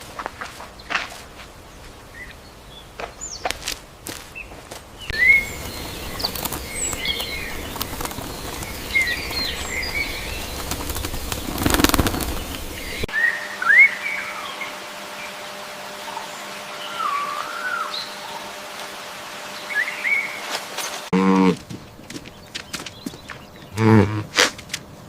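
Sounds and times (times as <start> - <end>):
small birds chirping: 4.3 - 14.6, 21.4 - 25.0
wings flapping: 5.1 - 13.1.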